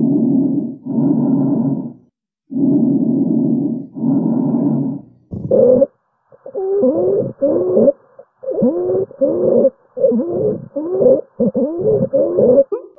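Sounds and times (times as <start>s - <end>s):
noisy breath sound: 0.0s - 5.5s.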